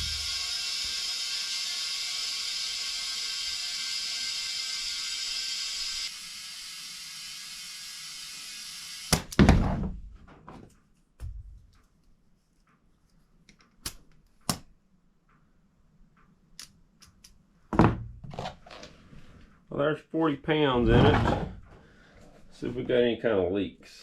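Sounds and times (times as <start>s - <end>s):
loud thunk: 20.8s - 21.6s.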